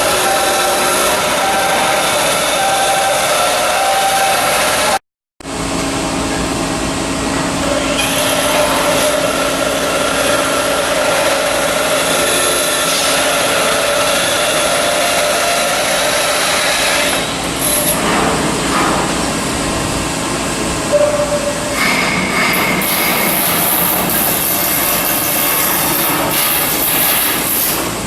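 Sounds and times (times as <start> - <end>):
shipyard machinery humming and hissing: 0.0 - 28.0.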